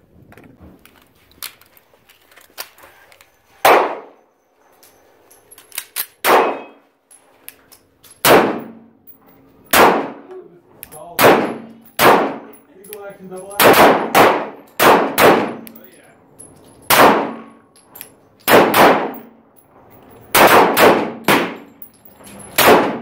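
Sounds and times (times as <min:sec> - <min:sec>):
handgun shots: 0:03.6 - 0:04.2, 0:06.0 - 0:06.8, 0:08.2 - 0:08.8, 0:09.7 - 0:10.2, 0:11.2 - 0:12.5, 0:13.6 - 0:15.7, 0:16.9 - 0:17.5, 0:18.5 - 0:19.3, 0:20.4 - 0:21.7, 0:22.6 - 0:23.0
light metallic clinks: 0:10.8 - 0:13.6, 0:15.6 - 0:16.9, 0:17.5 - 0:18.5, 0:19.6 - 0:20.4, 0:21.6 - 0:22.6.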